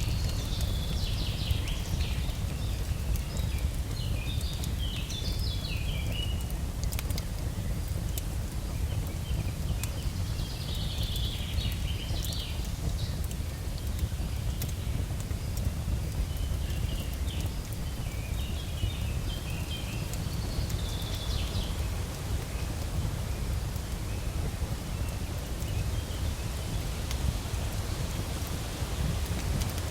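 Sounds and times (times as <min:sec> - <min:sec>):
campfire crackling: 0:00.0 - 0:29.9
low rumbling noise: 0:17.8 - 0:29.9.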